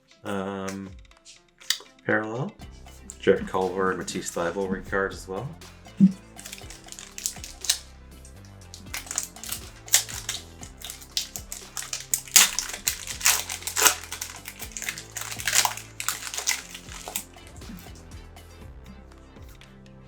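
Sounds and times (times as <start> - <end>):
background music: 0.0 - 20.0
foil wrappers tearing and crinkling: 6.4 - 7.8, 8.7 - 18.0.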